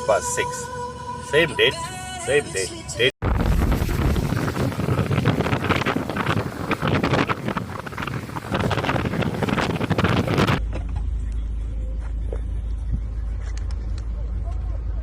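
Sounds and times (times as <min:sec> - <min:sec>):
wind buffeting microphone: 0:03.2 - 0:10.6
steady low rumble: 0:03.2 - 0:15.0.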